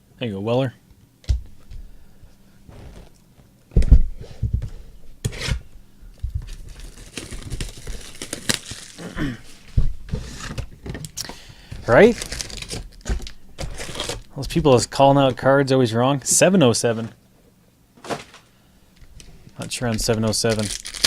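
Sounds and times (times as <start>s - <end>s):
cards and wrappers rustling: 6.2s - 10.6s, 11.7s - 15.3s, 19.2s - 21.0s
wrappers crinkling and tearing: 6.4s - 9.2s, 11.8s - 14.4s, 19.6s - 21.0s.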